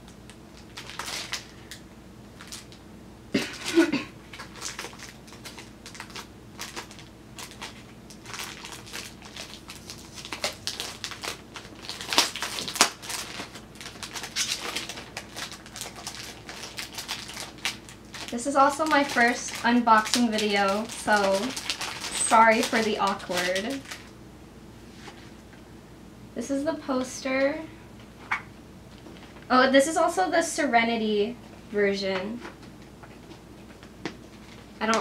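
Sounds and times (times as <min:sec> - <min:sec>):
paper packaging crinkling: 0:00.0 - 0:01.8, 0:02.4 - 0:02.8, 0:03.4 - 0:24.2.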